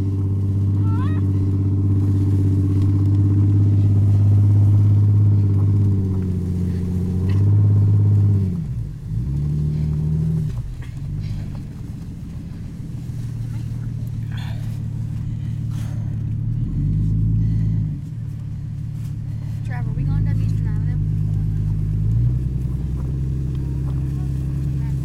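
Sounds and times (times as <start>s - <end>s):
car engine running under load: 0.0s - 25.0s.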